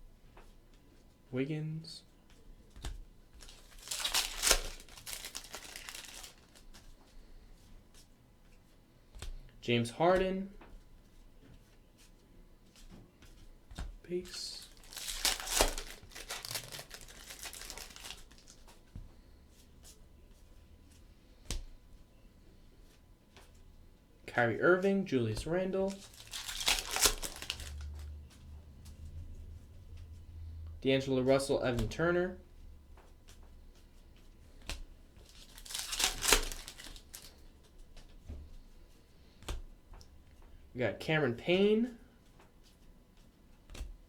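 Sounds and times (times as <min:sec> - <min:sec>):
cards and foil wrappers rustling: 0:03.3 - 0:07.3, 0:14.2 - 0:19.0, 0:25.3 - 0:28.5, 0:34.5 - 0:38.1.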